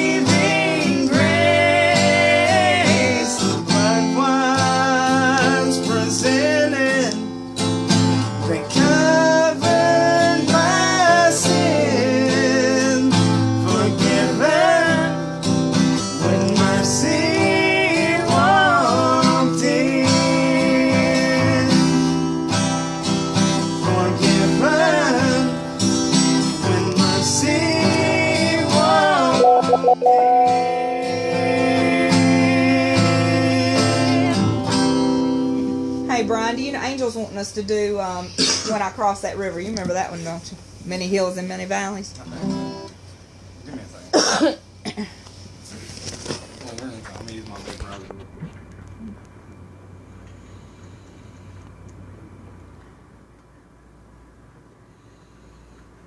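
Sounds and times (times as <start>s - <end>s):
acoustic guitar: 0.0s - 49.3s
person singing slow melody: 29.2s - 32.4s.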